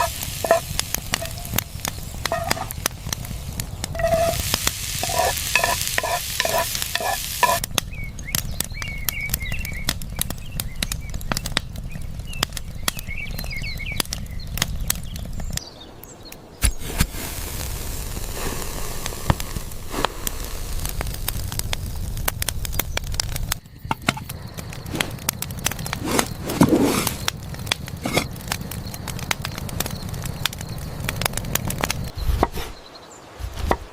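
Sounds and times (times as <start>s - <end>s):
food sizzling hiss: 0.0s - 8.0s, 16.5s - 33.9s.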